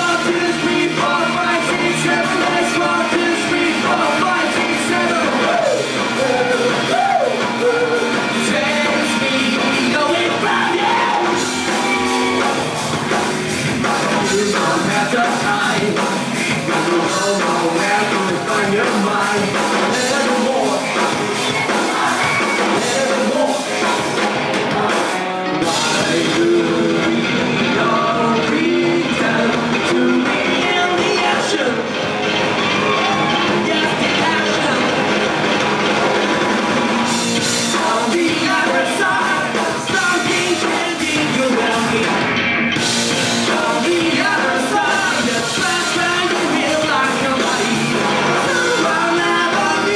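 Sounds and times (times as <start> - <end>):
person singing: 0.0 - 12.8, 13.9 - 35.4, 37.4 - 42.3, 43.1 - 49.9
rock band playing live: 0.0 - 49.9.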